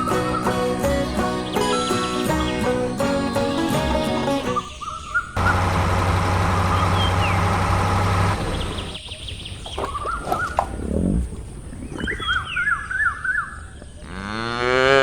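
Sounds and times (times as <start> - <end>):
engine running: 5.4 - 9.1
bird-like chirps: 6.6 - 14.0.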